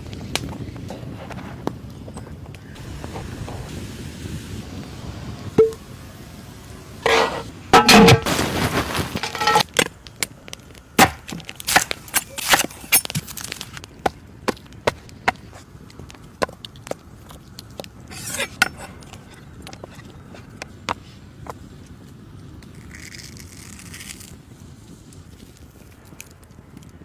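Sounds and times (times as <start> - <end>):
sharp knocks and cracks: 7.8 - 17.0.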